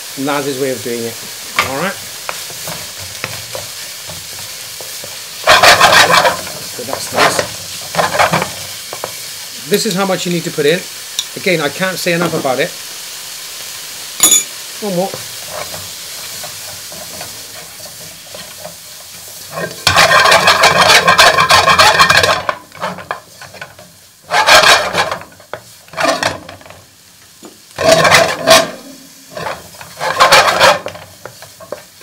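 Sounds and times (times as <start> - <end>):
food sizzling in a pan: 0.0 - 32.0
utensil stirring and scraping: 1.0 - 10.0, 15.0 - 26.6, 27.8 - 32.0.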